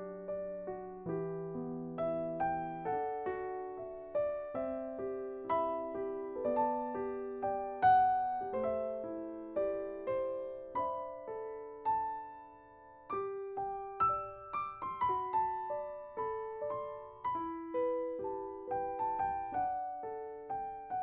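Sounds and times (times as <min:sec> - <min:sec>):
gentle piano notes: 0:00.0 - 0:21.0.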